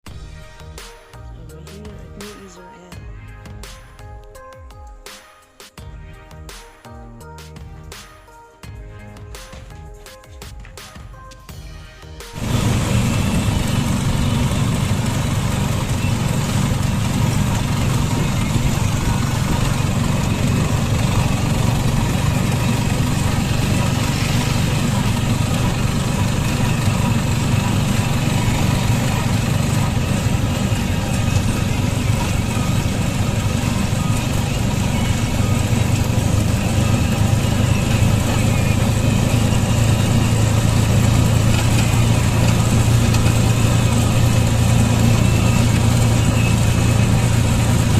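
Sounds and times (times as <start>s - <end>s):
vehicle engine humming: 12.4s - 47.9s.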